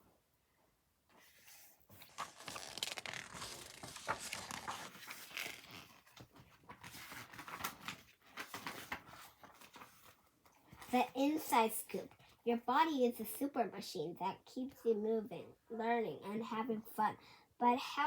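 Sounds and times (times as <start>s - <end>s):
paper rustling and crinkling: 1.3s - 11.0s.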